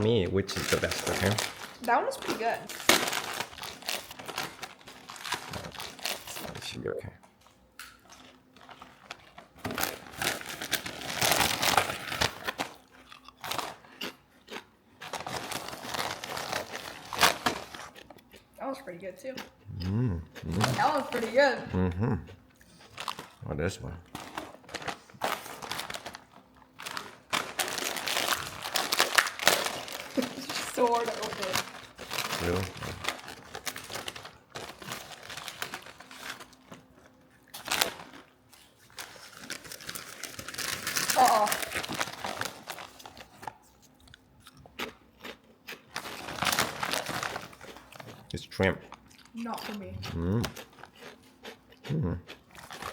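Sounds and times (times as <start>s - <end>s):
chip bag crinkling: 0.0s - 7.0s, 7.8s - 18.4s, 22.7s - 51.5s, 52.3s - 52.9s
crunching potato chips: 0.0s - 7.0s, 7.8s - 18.6s, 19.4s - 52.9s.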